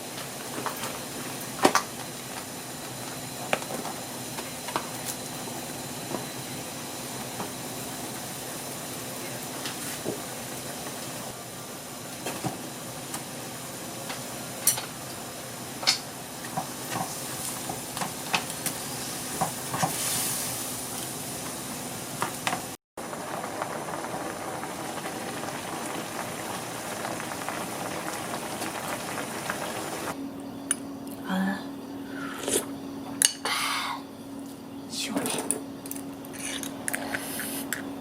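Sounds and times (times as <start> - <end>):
food sizzling in a pan: 16.0 - 30.2.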